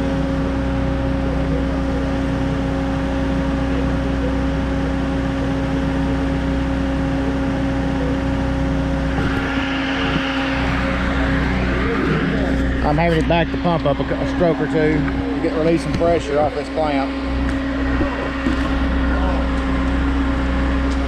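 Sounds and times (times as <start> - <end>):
pump engine droning: 0.0 - 21.0
rushing noise: 8.8 - 16.2.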